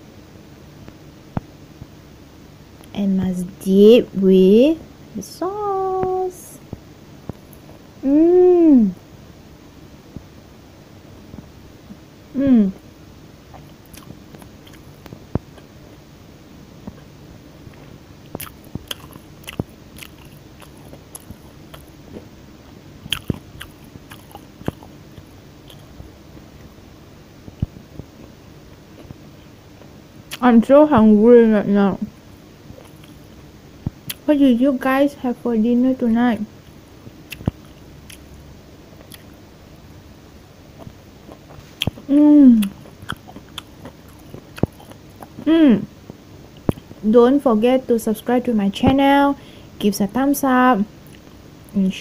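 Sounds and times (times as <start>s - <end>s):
person humming mmm: 8.0s - 9.0s, 12.3s - 12.8s, 41.8s - 42.8s, 45.4s - 45.9s
chewing crunchy fried chicken: 13.5s - 16.0s, 17.7s - 22.3s, 23.0s - 26.8s, 32.7s - 34.3s, 36.6s - 38.4s, 39.0s - 39.4s, 40.7s - 45.5s
wet mouth clicks: 23.1s - 24.9s, 37.3s - 38.3s, 42.6s - 45.4s.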